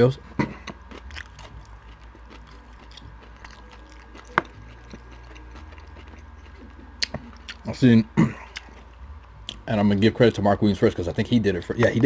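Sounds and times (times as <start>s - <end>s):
person chewing food: 0.2s - 9.6s.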